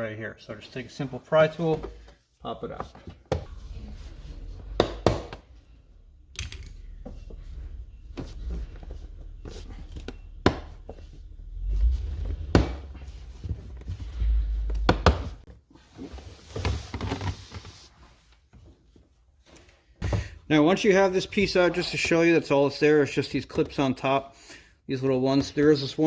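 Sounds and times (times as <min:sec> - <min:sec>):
rubbing and handling noise: 0:00.5 - 0:19.8.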